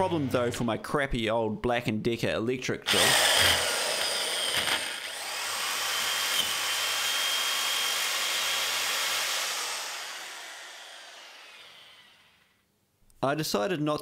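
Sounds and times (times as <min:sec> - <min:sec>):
electric drill drilling metal: 0:02.9 - 0:12.6.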